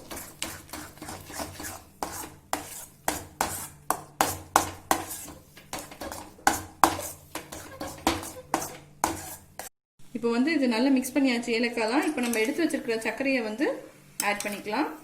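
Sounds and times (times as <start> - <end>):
spoon scraping and knocking pan: 0.0 - 9.7.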